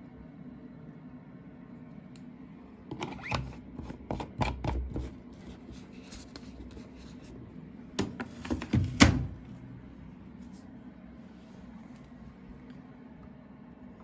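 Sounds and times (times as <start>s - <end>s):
knocks and clicks at washing machine: 8.0s - 9.4s.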